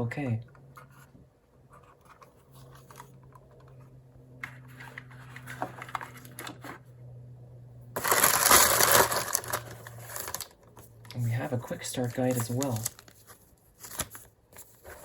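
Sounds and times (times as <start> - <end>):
faint steady hum: 0.0 - 15.0
packaging rustling: 8.0 - 11.2, 11.8 - 15.0.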